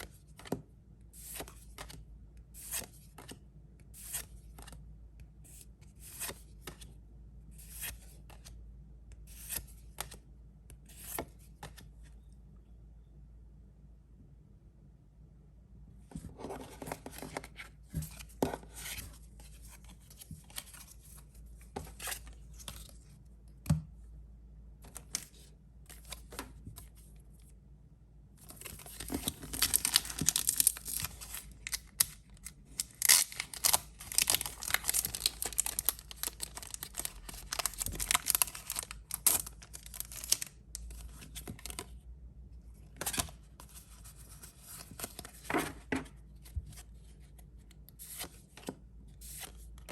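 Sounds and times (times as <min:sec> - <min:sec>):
packaging tearing and crinkling: 0:28.8 - 0:32.1, 0:32.8 - 0:40.4.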